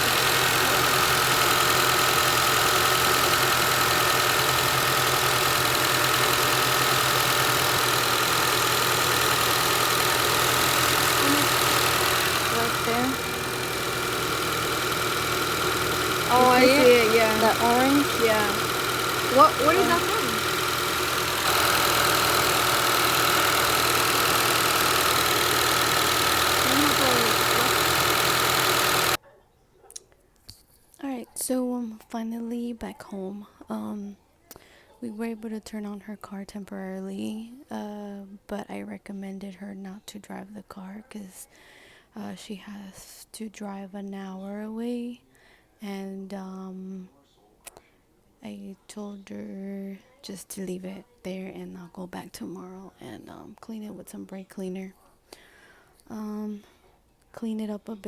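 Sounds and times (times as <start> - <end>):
car engine idling: 0.0 - 29.2.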